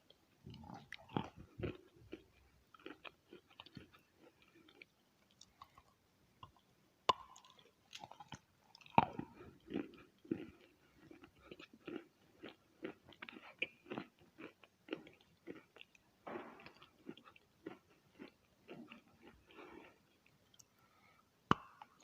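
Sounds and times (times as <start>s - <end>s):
chalk being chewed: 7.4s - 16.0s.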